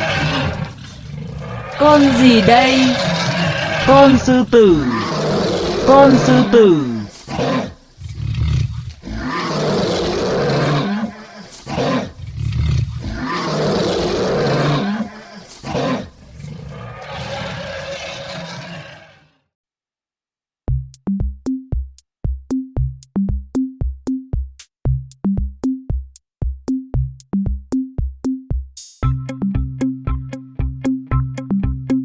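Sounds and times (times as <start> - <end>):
lion roaring: 0.0 - 19.4
music with plucked notes: 26.6 - 32.0.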